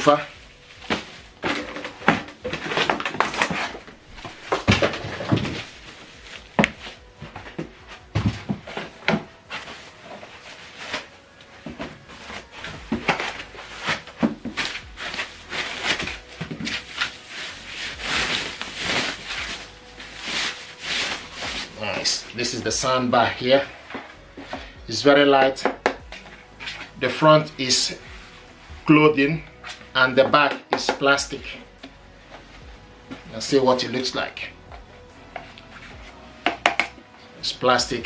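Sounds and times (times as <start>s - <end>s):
parts knocking and clunking: 0.0s - 37.1s
cardboard packaging rustling: 0.0s - 38.0s.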